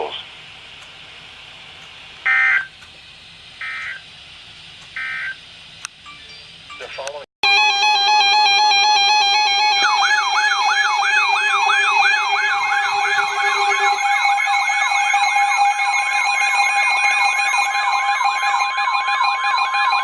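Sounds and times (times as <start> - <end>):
steady alarm tones: 3.6 - 4.1, 7.4 - 20.0
siren-like falling whoop: 7.4 - 20.0.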